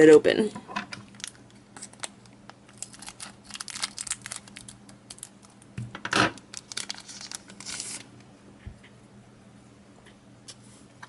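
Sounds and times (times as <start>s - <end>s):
foil wrapper crinkling: 1.1s - 8.1s.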